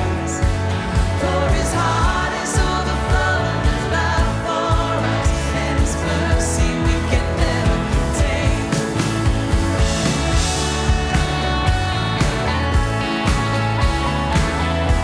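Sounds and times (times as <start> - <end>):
person singing: 0.0 - 9.4
drum beat: 0.0 - 15.0
live band playing pop song: 0.0 - 15.0.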